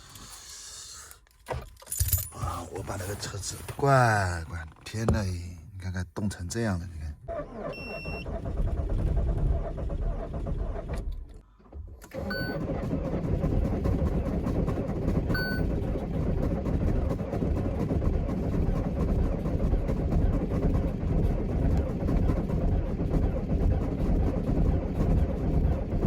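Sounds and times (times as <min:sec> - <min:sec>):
engine running with low rumble: 0:07.2 - 0:26.0.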